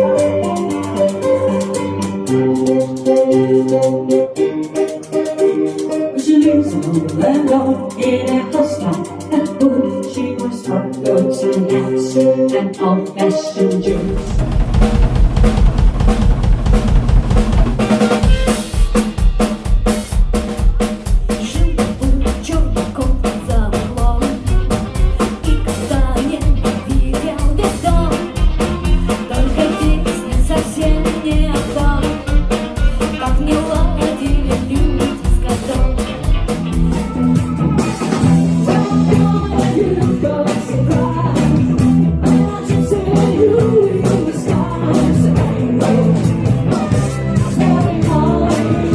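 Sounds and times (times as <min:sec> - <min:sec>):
held chords: 0:00.0 - 0:48.9
rock band playing: 0:00.0 - 0:48.9
drum kit beat: 0:13.1 - 0:48.9.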